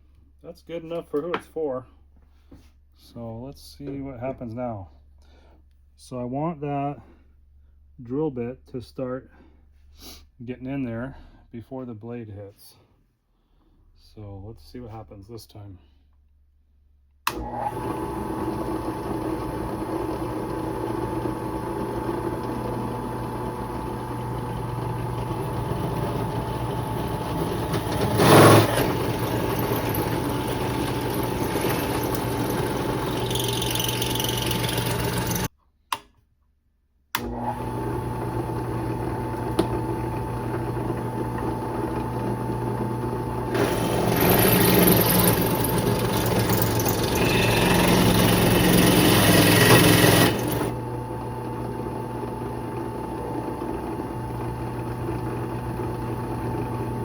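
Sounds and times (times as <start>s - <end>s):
power drill cutting sheet metal: 17.3s - 35.5s, 43.5s - 50.8s.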